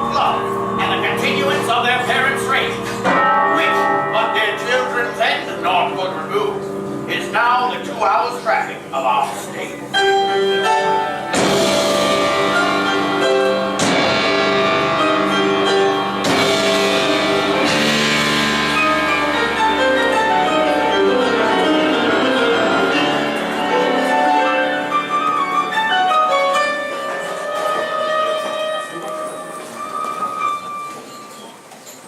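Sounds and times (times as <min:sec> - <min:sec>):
sharp crashes: 0:11.3 - 0:21.2.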